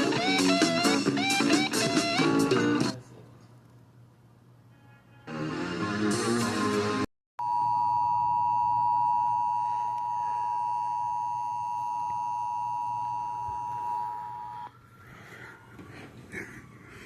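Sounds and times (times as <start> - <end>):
guitar music: 0.0 - 2.9.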